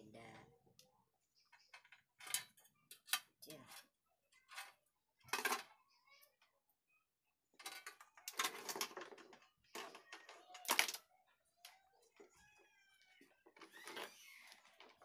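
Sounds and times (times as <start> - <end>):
clattering and scraping of parts: 1.5 - 5.8, 7.6 - 12.4, 13.0 - 15.0.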